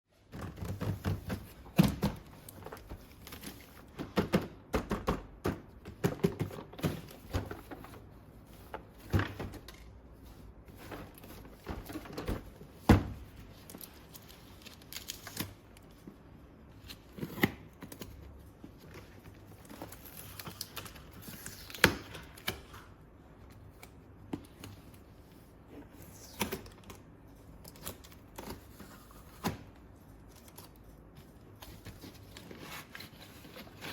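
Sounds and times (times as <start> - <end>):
packaging rustling and tearing: 13.4 - 16.1.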